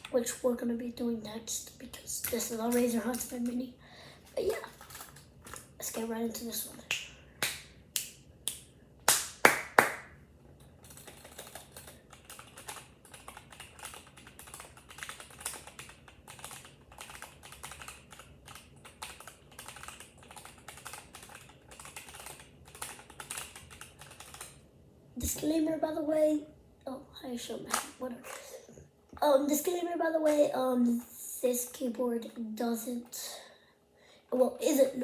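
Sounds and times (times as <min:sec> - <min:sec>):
keyboard typing: 0:10.8 - 0:24.6.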